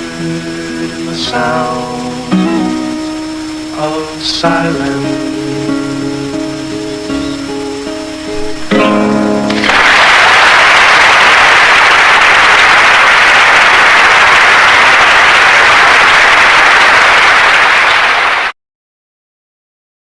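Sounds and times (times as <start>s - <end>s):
audience applauding: 9.5s - 18.6s.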